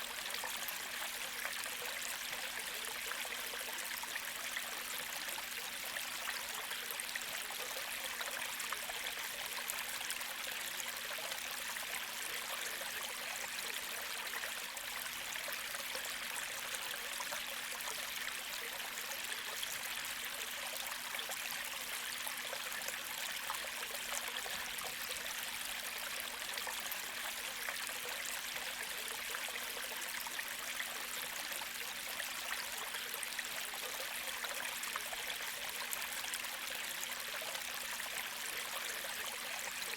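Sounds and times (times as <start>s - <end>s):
creek babbling over stones: 0.0s - 39.9s.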